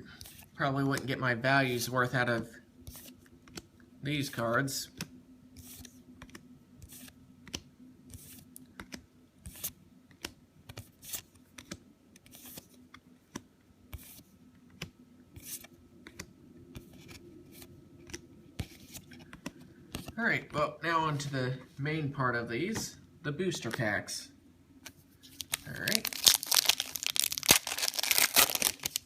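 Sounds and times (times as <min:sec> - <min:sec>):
trading cards clicking and sliding: 0:01.8 - 0:03.7, 0:04.3 - 0:20.2.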